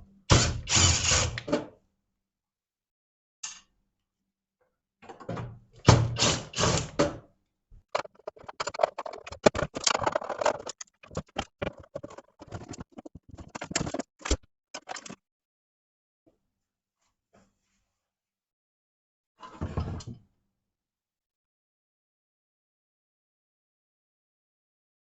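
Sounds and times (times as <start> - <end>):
rustling and knocking: 7.9 - 15.2
sharp clicks and scrapes: 7.9 - 15.2.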